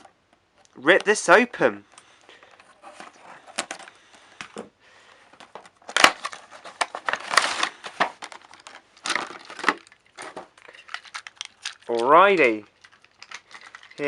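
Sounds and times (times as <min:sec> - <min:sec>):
packaging crinkling: 0:05.8 - 0:14.0
cardboard packaging tearing: 0:05.9 - 0:10.4.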